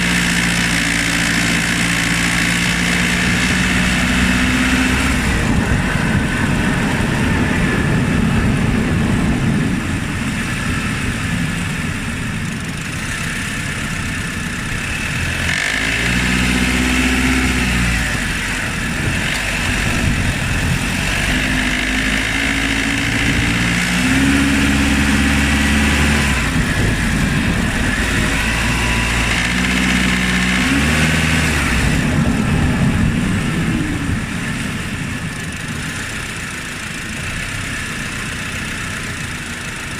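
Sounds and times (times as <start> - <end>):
car engine running: 0.0 - 39.9
engine knock: 32.1 - 39.9.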